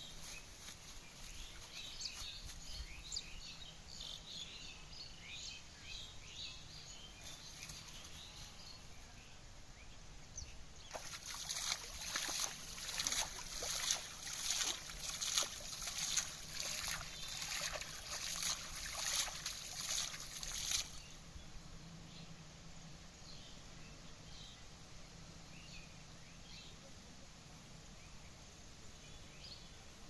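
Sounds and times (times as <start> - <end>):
faint bird or insect chirps: 0.0 - 30.0
water splashing and sloshing: 10.9 - 21.0.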